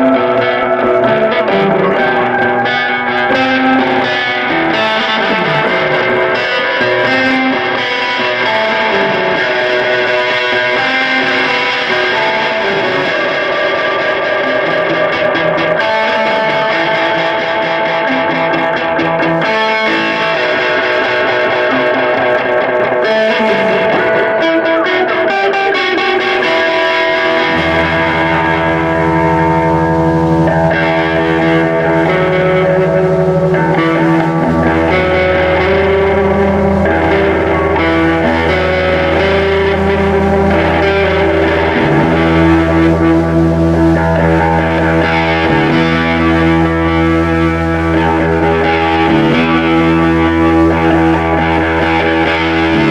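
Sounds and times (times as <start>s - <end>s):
distorted electric guitar: 0.0s - 52.9s
deep sustained bass line: 27.2s - 52.9s.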